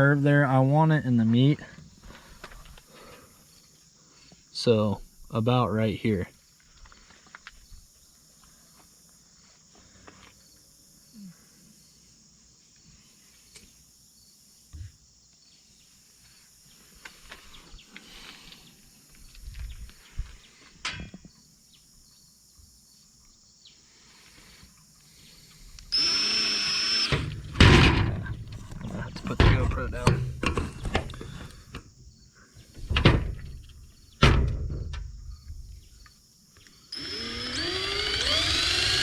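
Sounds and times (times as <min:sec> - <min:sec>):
power drill whining: 0:25.8 - 0:30.1, 0:36.9 - 0:39.0.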